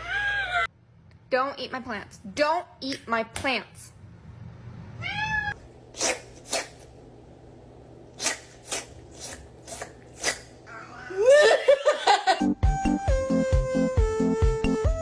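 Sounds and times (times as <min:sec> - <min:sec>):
cat meowing: 0:05.0 - 0:05.6
cat sneezing: 0:05.9 - 0:06.9, 0:08.2 - 0:10.6
music with a beat: 0:12.6 - 0:15.0.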